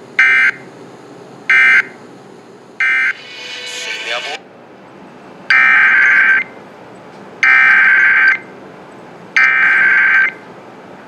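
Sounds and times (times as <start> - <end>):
buzzy digital data tones: 2.8 - 4.4.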